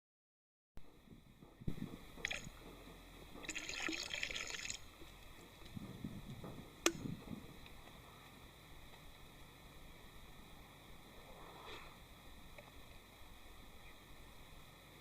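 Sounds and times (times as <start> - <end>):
water splashing and dripping: 1.7 - 2.7, 3.4 - 5.8
hissing splash: 3.4 - 4.9.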